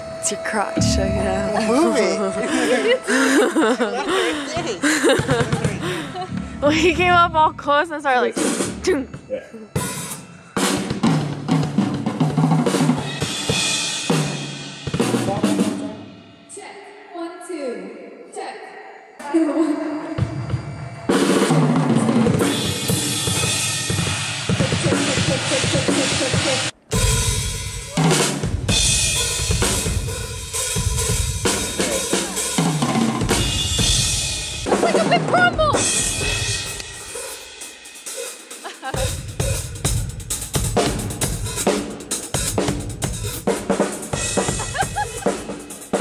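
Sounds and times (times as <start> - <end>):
cymbal ringing: 0.0 - 9.1
cymbals: 0.0 - 17.0, 19.2 - 46.0.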